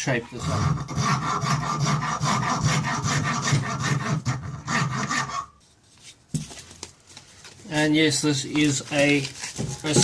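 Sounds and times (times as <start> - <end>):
hand rasp filing wood: 0.3 - 5.5.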